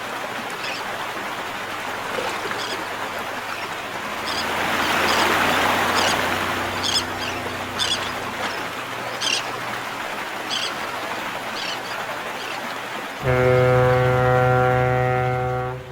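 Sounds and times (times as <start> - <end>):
sea wash: 0.0 - 15.9
short high bird calls: 6.8 - 9.6, 10.5 - 10.8, 11.5 - 12.6
deep ship's horn: 13.2 - 15.9.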